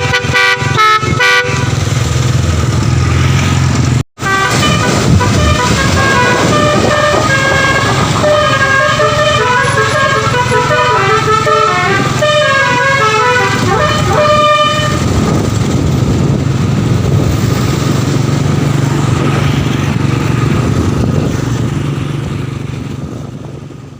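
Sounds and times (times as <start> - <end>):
musical bus horn melody: 0.0 - 1.8, 4.2 - 15.2
bus engine running: 0.0 - 23.9.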